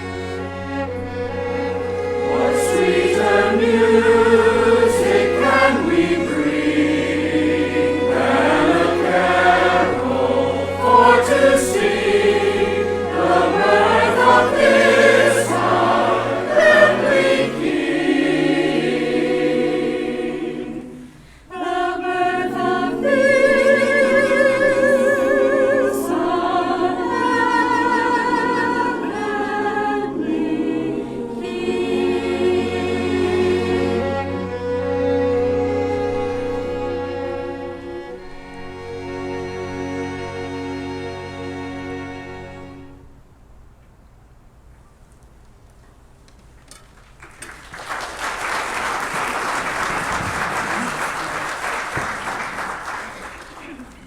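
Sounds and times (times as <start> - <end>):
orchestral accompaniment: 0.0 - 20.6, 22.1 - 43.1
choir singing: 0.0 - 43.0.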